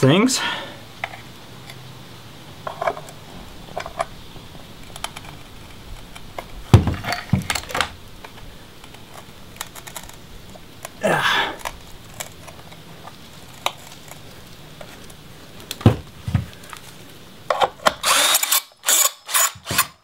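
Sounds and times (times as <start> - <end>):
screws and hand tools clicking: 17.5 - 20.0.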